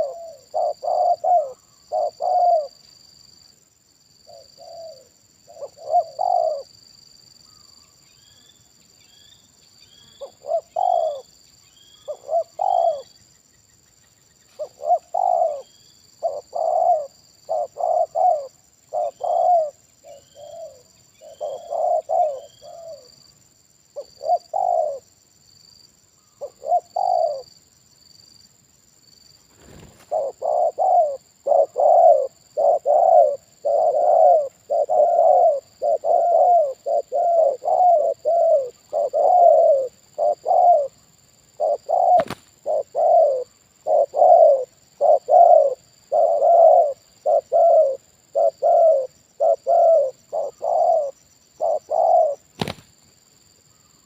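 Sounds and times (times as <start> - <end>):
doves cooing: 0.0 - 2.8, 4.3 - 6.7, 10.2 - 11.3, 12.1 - 13.1, 14.5 - 23.1, 24.0 - 25.1, 26.4 - 27.5, 29.6 - 41.0, 41.6 - 53.0
faint high bird chirps: 4.2 - 23.3, 29.5 - 52.9.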